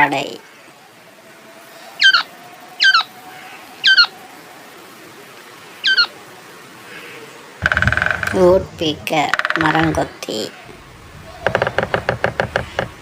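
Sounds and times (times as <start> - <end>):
quail calling: 2.0 - 3.1, 3.8 - 4.1, 5.8 - 6.1.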